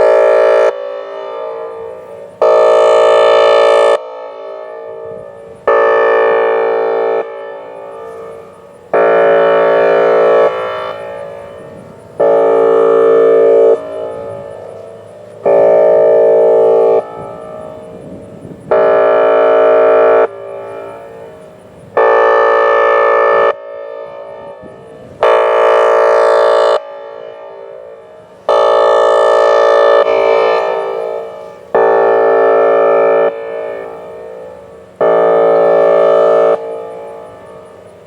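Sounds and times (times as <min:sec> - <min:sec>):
warning siren blasts: 0:00.0 - 0:38.0.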